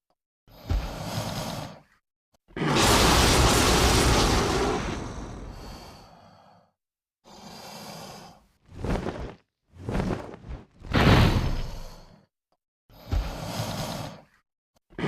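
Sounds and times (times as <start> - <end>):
breathy dinosaur roar: 2.6 - 6.3.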